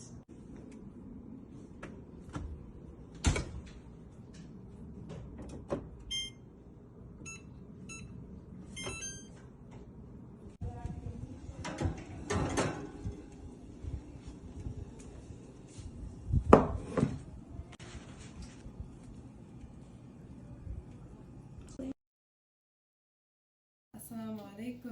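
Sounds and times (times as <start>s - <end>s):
oven knocks and clicks: 1.8s - 6.1s, 11.6s - 13.2s
short electronic beeps: 6.1s - 6.4s, 7.3s - 8.1s, 8.8s - 9.4s.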